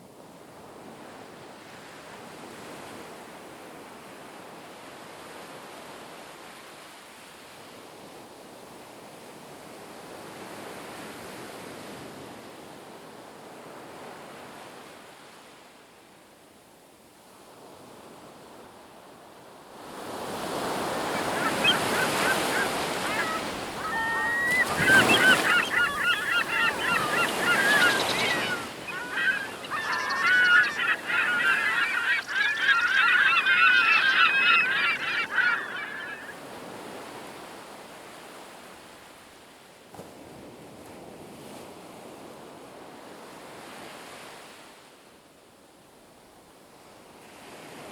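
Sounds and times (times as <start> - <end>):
sea waves washing: 20.0 - 37.4
flock of birds calling: 20.5 - 36.7.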